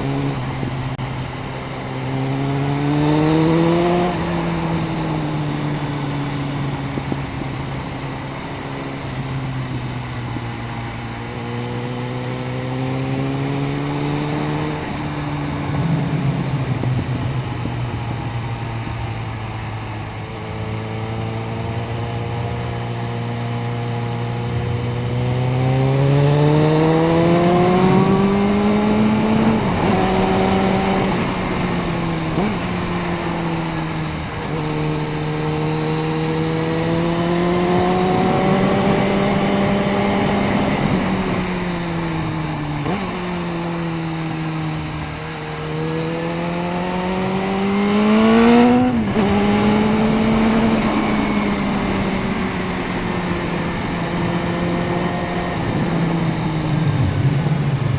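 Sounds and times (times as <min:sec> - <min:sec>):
wind and road noise: 0:00.0 - 0:57.9.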